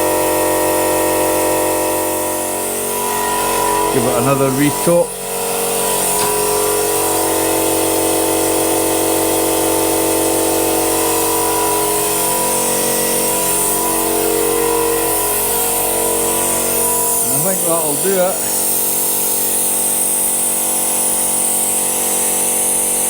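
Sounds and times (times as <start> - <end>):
brake-bleeding machine humming: 0.0 - 19.9
high hiss: 16.6 - 19.6.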